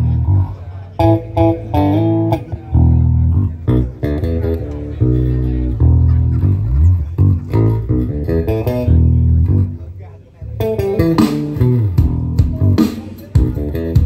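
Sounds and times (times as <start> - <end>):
loud music with heavy bass guitar: 0.0 - 14.0
plucked guitar melody: 0.0 - 14.0.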